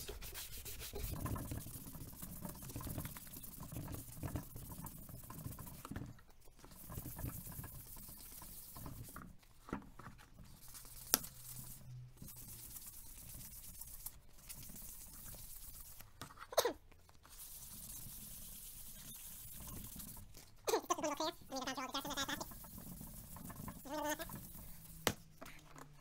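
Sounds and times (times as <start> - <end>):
sanding sponge scrubbing plastic: 0.0 - 5.9, 6.7 - 9.2, 10.6 - 16.1, 17.3 - 20.4, 21.1 - 25.1.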